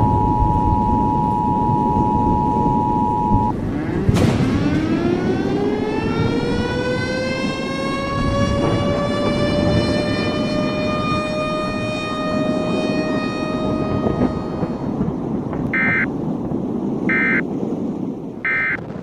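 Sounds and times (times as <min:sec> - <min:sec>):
short electronic beeps: 0:00.0 - 0:03.5, 0:15.8 - 0:16.1, 0:17.1 - 0:17.4, 0:18.5 - 0:18.8
warning siren steady tone: 0:00.0 - 0:16.1, 0:17.0 - 0:17.5, 0:18.4 - 0:18.9
low rumbling noise: 0:00.0 - 0:19.0.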